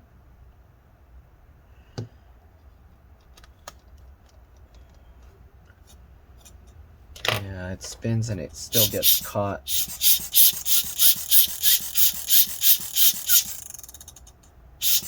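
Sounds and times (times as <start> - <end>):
laptop fan ticking: 8.7 - 15.0.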